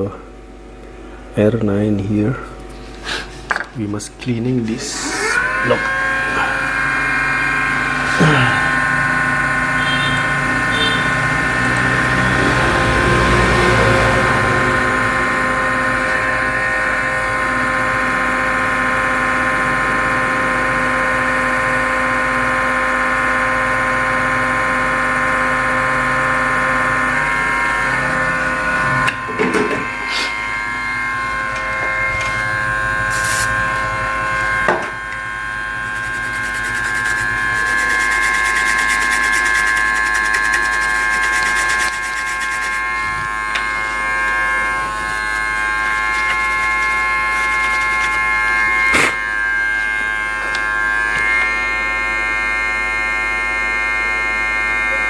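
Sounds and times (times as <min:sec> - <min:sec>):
small electric motor whining: 0:04.9 - 0:17.1, 0:26.6 - 0:51.8
rubbing and scraping: 0:33.1 - 0:33.6, 0:35.8 - 0:43.0, 0:44.8 - 0:49.2.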